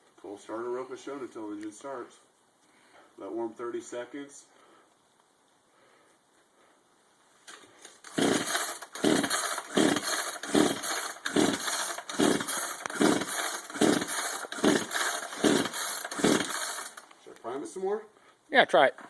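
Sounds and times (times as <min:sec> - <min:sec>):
chainsaw pull-start whirring: 0:07.5 - 0:17.1.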